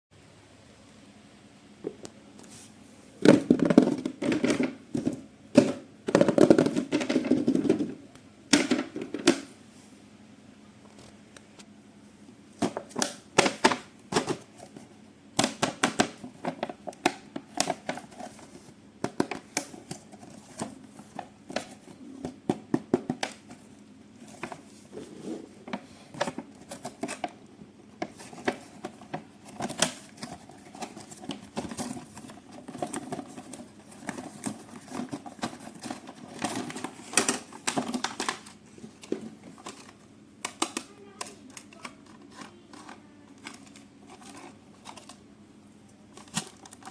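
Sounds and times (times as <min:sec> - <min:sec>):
plastic and cardboard crinkling: 0:12.6 - 0:27.4, 0:28.0 - 0:46.9.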